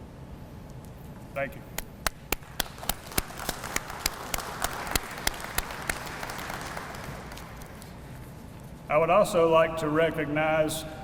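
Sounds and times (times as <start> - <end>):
sharp close claps: 1.7 - 8.0
audience applauding: 2.0 - 7.9.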